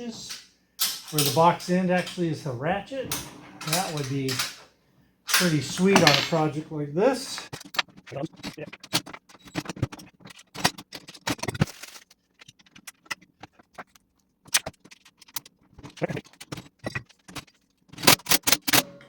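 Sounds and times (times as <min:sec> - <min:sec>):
metal tools clinking: 0:00.0 - 0:04.6, 0:05.3 - 0:07.9.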